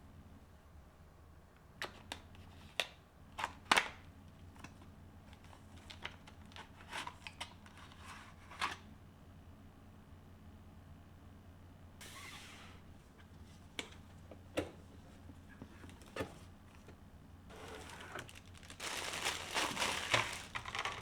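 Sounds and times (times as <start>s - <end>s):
low steady hum: 8.4s - 21.0s
packaging rustling: 17.5s - 21.0s.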